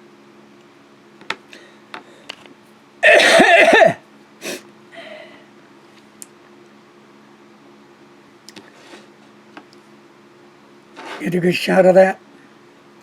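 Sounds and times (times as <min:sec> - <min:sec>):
man harsh coughing: 0:03.0 - 0:04.0.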